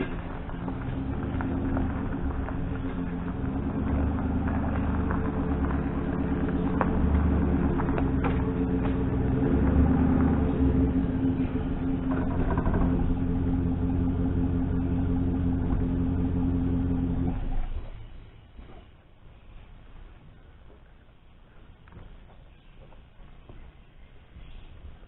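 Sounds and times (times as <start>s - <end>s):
engine running with low rumble: 0.0s - 19.0s.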